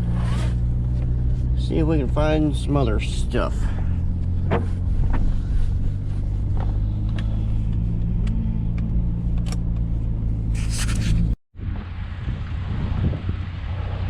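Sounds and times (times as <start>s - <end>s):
pickup truck engine drone: 0.0s - 14.0s.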